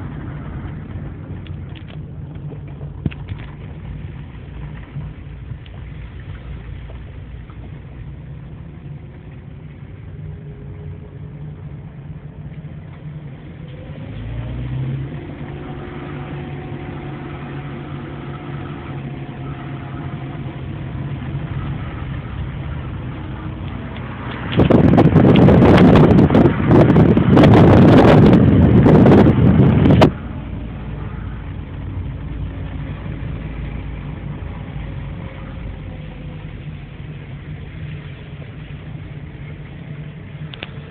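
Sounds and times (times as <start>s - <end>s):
car engine running: 0.0s - 40.9s.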